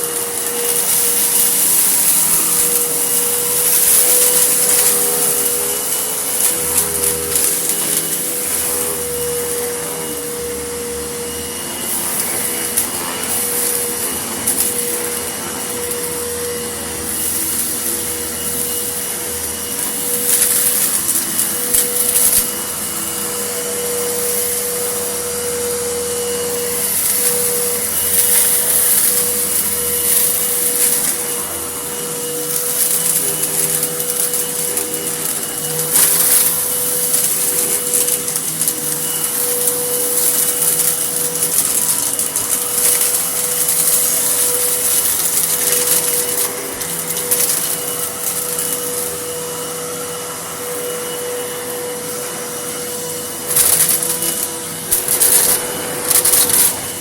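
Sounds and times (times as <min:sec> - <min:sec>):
vacuum cleaner running: 0:00.0 - 0:57.0
vacuum sucking up grit: 0:00.0 - 0:57.0.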